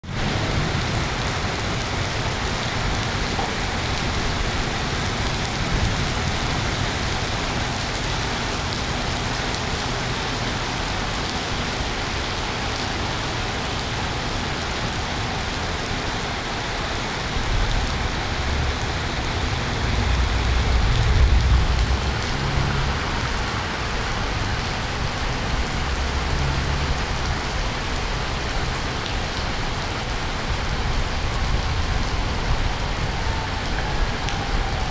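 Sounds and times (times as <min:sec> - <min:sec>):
heavy rain falling: 0:00.0 - 0:34.9
thunder rumbling: 0:17.4 - 0:26.1.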